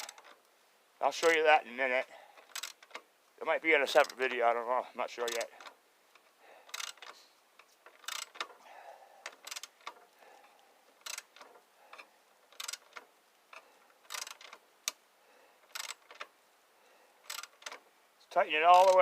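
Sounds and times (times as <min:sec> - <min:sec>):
ratchet wrench clicking: 0:02.4 - 0:03.0, 0:06.7 - 0:07.2, 0:07.9 - 0:08.5, 0:09.3 - 0:10.0, 0:11.0 - 0:13.1, 0:14.1 - 0:15.0, 0:15.6 - 0:16.3, 0:17.2 - 0:17.8, 0:18.8 - 0:19.0.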